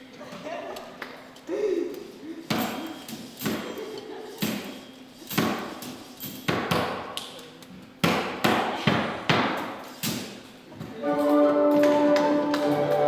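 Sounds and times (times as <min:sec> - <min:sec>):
sharp knocks ringing in a hall: 0:05.3 - 0:07.2, 0:08.0 - 0:10.4.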